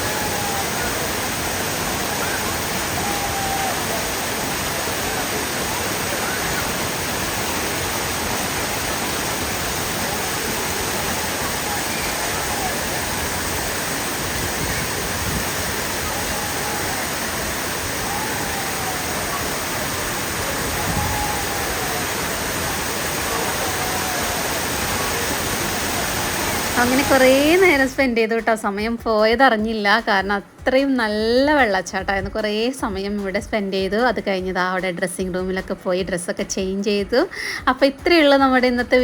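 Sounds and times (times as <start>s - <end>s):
waterfall rushing: 0.0s - 28.1s.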